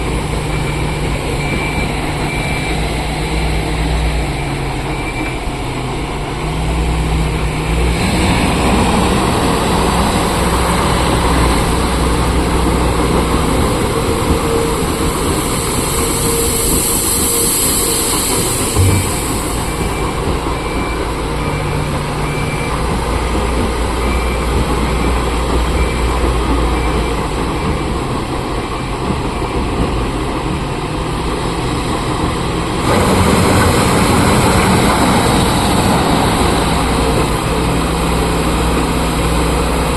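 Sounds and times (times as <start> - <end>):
heavy diesel machinery running: 0.0 - 39.9
short thump: 18.8 - 19.6.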